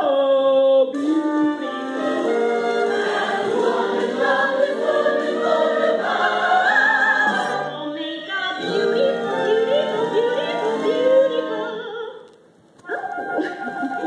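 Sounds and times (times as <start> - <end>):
choir singing held notes: 1.0 - 7.8, 8.5 - 11.7.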